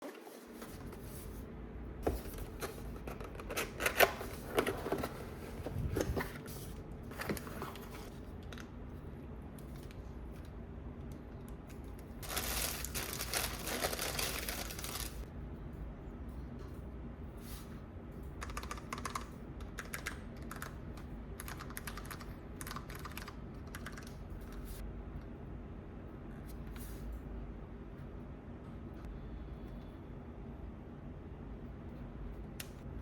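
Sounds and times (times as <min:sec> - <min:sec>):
packaging crinkling and tearing: 0:12.2 - 0:15.2.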